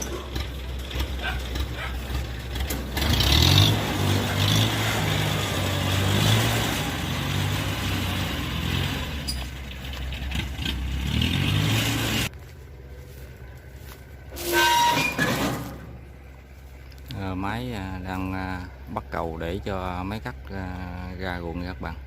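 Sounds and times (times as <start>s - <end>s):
diesel engine revving: 0.0s - 14.5s.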